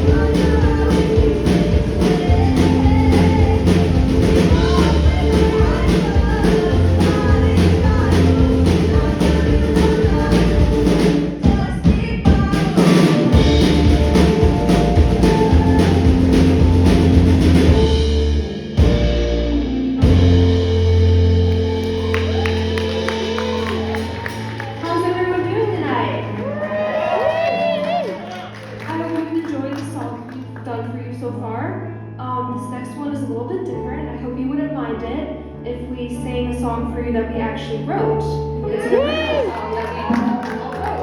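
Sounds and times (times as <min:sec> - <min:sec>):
live rock band playing: 0:00.0 - 0:11.4, 0:12.8 - 0:25.4
person singing: 0:00.0 - 0:17.1
drum kit beat: 0:00.0 - 0:25.7.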